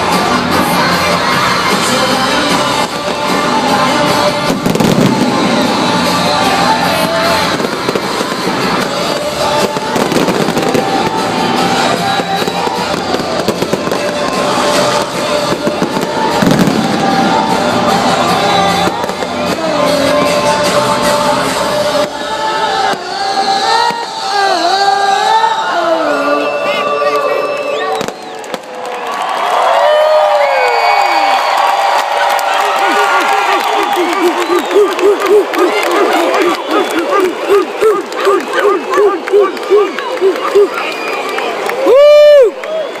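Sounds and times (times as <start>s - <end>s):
fireworks bursting and crackling: 0.0s - 24.2s, 28.0s - 28.8s, 31.4s - 41.3s
loud music: 0.0s - 28.1s
crowd noise: 0.0s - 43.0s.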